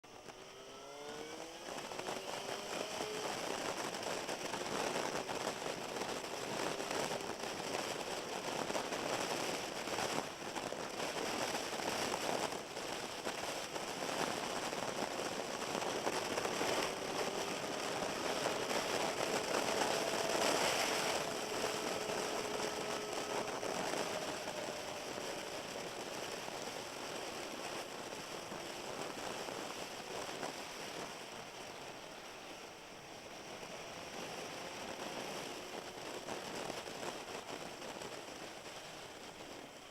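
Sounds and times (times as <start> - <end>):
faint motorcycle engine: 0.0 - 39.9
wind noise: 1.1 - 39.9
tyre hiss on wet road: 1.7 - 39.9
microphone crackling: 3.7 - 31.1.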